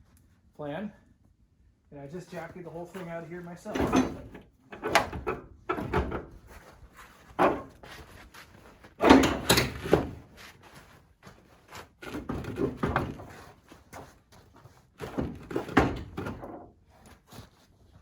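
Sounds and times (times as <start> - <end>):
sheet metal panels clunking: 3.7 - 6.3, 9.0 - 10.1.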